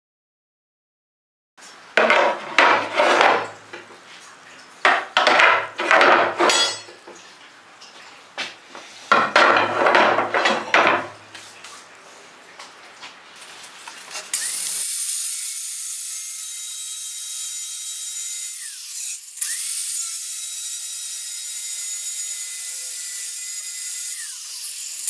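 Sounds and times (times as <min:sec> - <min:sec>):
scrap iron clattering and scraping: 0:02.0 - 0:03.5, 0:04.9 - 0:07.0, 0:09.1 - 0:11.1.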